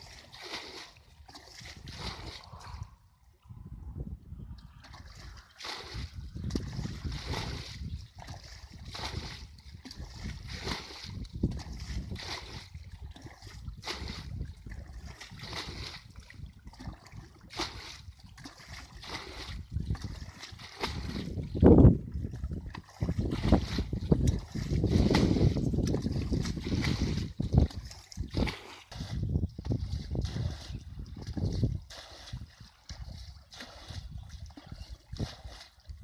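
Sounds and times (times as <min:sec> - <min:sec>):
water splashing: 0:00.0 - 0:03.0, 0:04.8 - 0:36.0.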